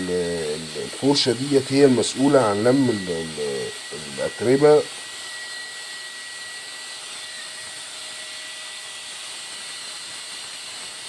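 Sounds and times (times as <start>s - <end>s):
thin high tone: 0.0s - 4.9s
steady hiss: 0.0s - 5.2s.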